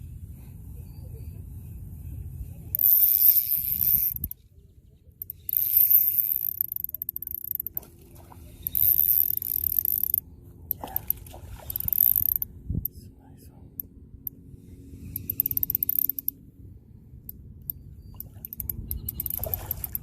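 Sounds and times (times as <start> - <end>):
spinning reel cranking: 2.7 - 4.4, 5.2 - 7.8, 8.6 - 10.2, 11.7 - 12.4, 15.2 - 16.3, 18.4 - 19.8
line winding on reel: 2.8 - 4.4, 5.2 - 7.8, 8.6 - 10.2, 11.7 - 12.4, 15.2 - 16.3, 18.4 - 19.8
faint clicks: 17.3 - 20.0.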